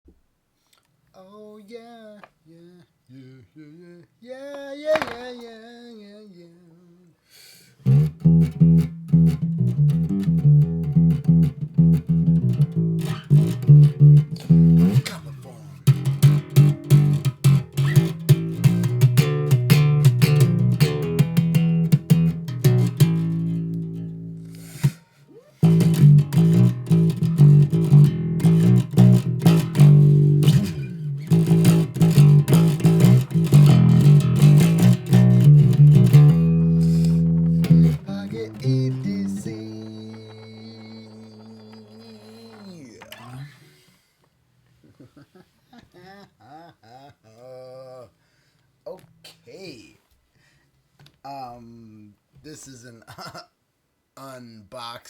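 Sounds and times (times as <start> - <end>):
bass and electric guitar riff: 7.8 - 25.0, 25.6 - 42.1.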